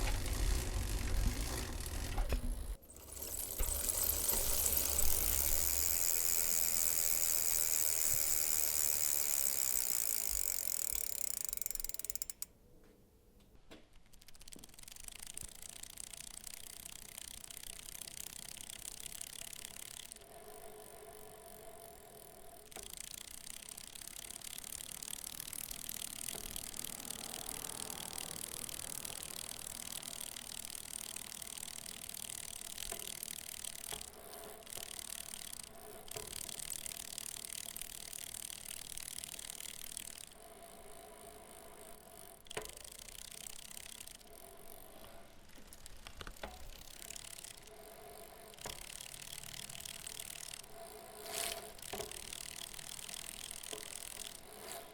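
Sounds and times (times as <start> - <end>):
bicycle chain movement: 0.0 - 12.5, 13.9 - 54.9
freewheel hub clicking: 0.0 - 12.5, 13.8 - 54.9
light metallic mechanical noise: 0.0 - 12.5.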